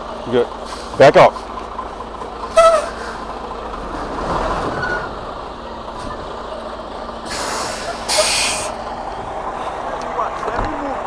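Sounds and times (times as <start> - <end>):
truck engine running: 0.0 - 11.0
air brakes hissing: 0.6 - 1.6, 2.4 - 3.4, 7.2 - 8.9.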